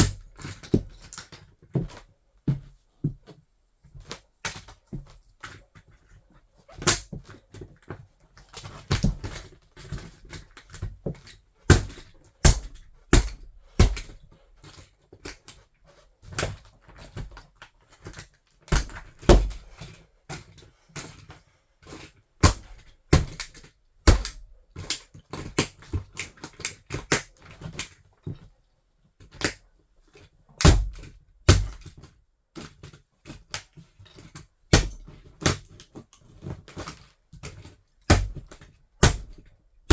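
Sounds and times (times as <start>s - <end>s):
plastic toy cracking and snapping: 22.4s - 27.3s.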